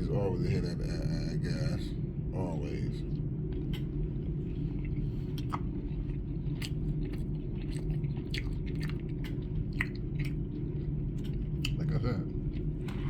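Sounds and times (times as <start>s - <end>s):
steady low hum: 0.0s - 13.0s
person chewing with mouth clicks: 4.6s - 13.0s.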